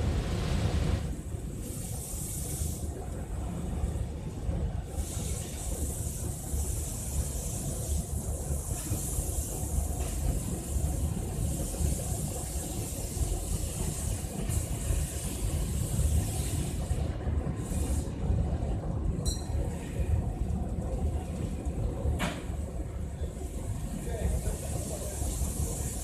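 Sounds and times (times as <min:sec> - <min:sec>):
burner flame and blower rumble: 0:00.0 - 0:26.0
hiss: 0:00.1 - 0:03.2, 0:04.8 - 0:18.3, 0:23.3 - 0:26.0.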